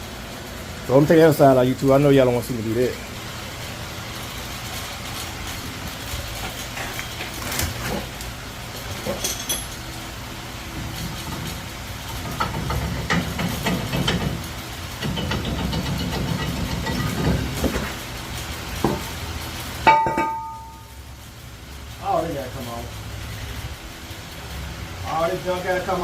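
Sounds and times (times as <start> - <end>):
metal tools clanking: 8.9 - 9.9, 19.9 - 20.9
ringing metal clang: 19.9 - 20.9.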